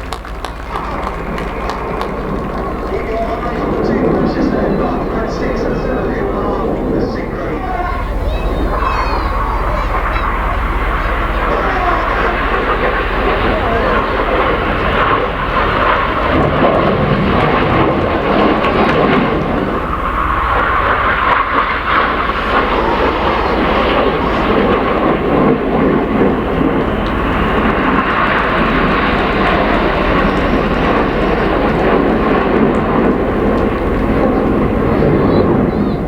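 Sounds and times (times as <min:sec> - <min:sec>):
jets flying past: 0:00.0 - 0:36.0.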